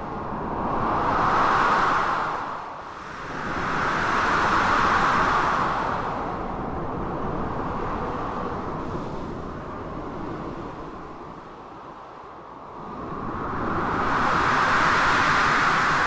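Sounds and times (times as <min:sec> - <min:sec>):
blizzard wind: 0:12.6 - 0:16.0.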